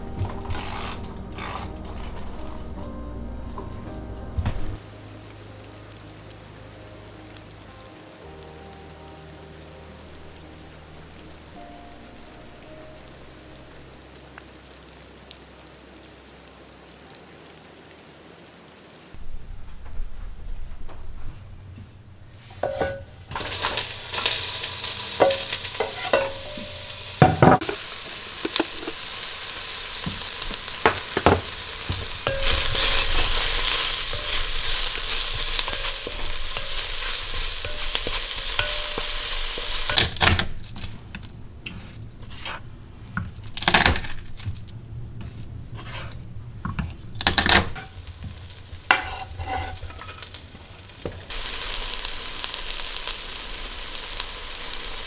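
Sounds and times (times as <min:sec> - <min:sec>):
food sizzling in a pan: 0:00.0 - 0:02.8, 0:22.4 - 0:40.9, 0:47.7 - 0:55.0.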